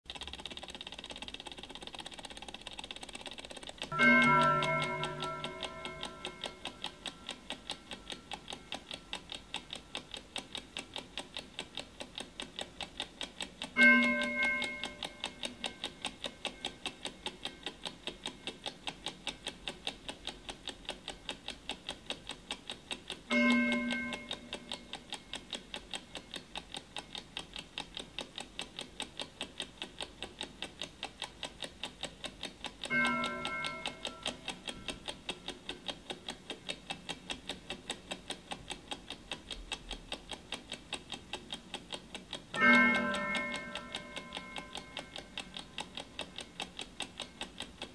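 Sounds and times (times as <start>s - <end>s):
clock ticking quickly: 0.1s - 47.9s
gong chime ringing: 4.0s - 6.6s.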